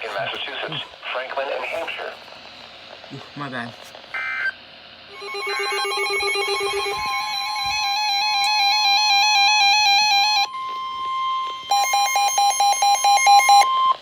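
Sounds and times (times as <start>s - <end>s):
steady high alarm tone: 4.1s - 14.0s
warbling electronic beeps: 5.1s - 12.2s.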